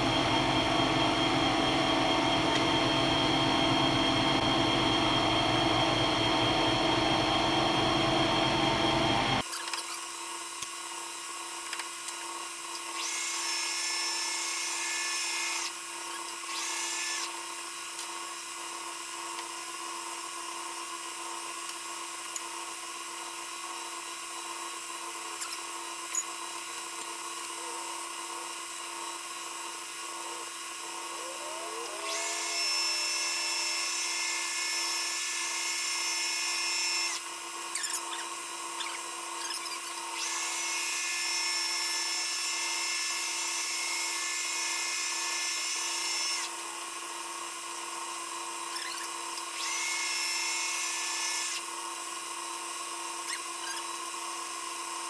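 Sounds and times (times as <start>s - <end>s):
metal lathe whining: 24.8s - 47.3s
high-pitched cutting whine: 29.8s - 42.5s.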